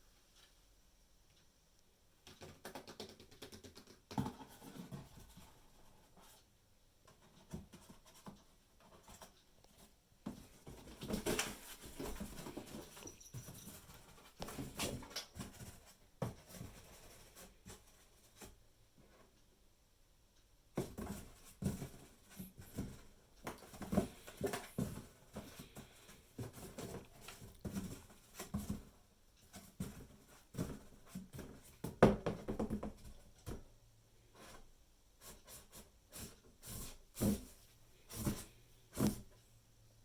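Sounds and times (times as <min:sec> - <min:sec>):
knocks and thumps: 0:29.8 - 0:33.7.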